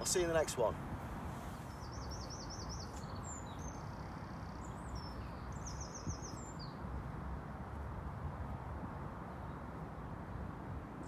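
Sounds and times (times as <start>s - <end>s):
steady low background noise: 0.0s - 7.8s.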